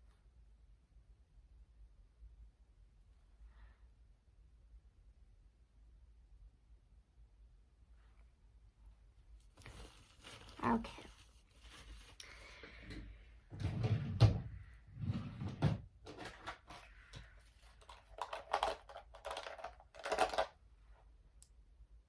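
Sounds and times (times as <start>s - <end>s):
rustles and scrapes: 9.3s - 14.0s, 14.6s - 20.4s.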